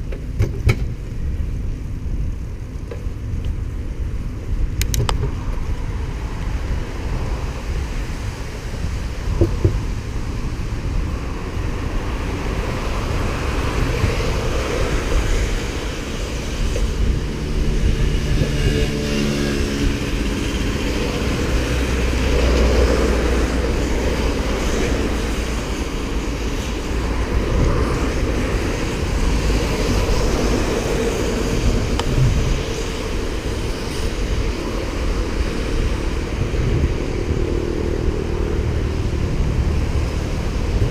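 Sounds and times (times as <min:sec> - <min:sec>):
road noise while cycling: 0:00.0 - 0:40.9
wind buffeting microphone: 0:00.0 - 0:40.9
motor vehicle engine passing: 0:15.4 - 0:25.6.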